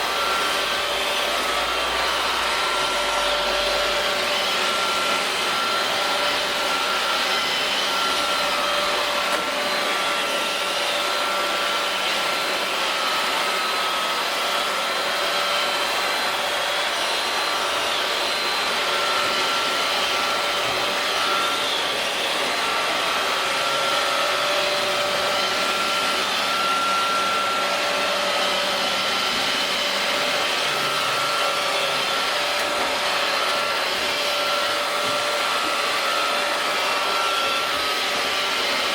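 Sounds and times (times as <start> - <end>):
robot vacuums whirring: 0.0 - 38.9.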